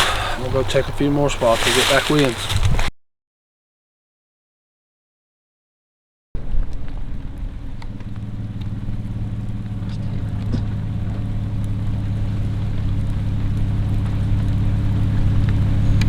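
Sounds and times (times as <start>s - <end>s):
raindrops ticking: 0.0s - 2.9s, 6.4s - 16.0s
vehicle engine running: 0.0s - 2.9s, 6.4s - 16.0s.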